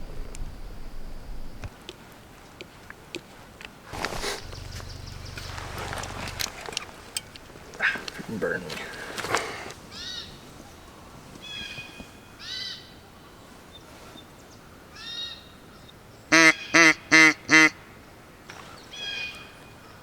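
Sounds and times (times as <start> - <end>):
high bird calls: 4.0 - 10.4.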